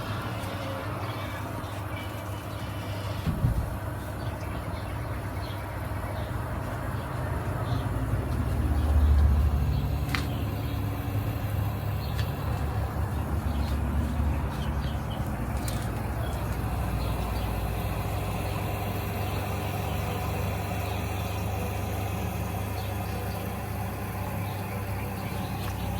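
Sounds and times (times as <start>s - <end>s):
washing machine humming and rumbling: 0.0s - 25.9s.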